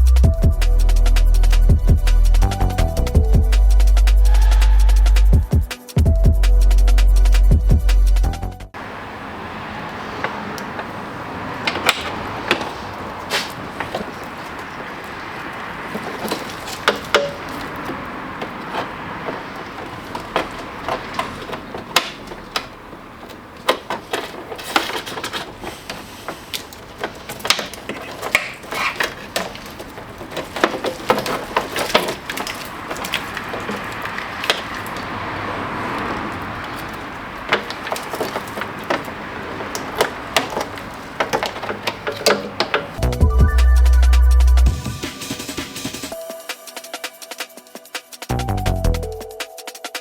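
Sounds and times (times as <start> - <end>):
car parts and tools clattering: 8.7 - 46.2.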